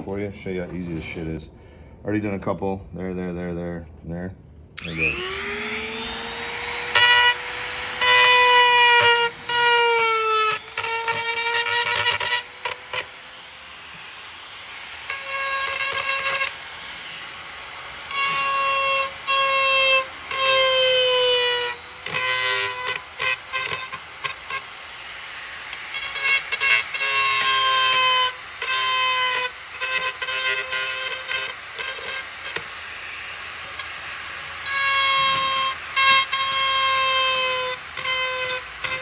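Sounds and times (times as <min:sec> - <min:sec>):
power tool whining in bursts: 0:04.8 - 0:39.0.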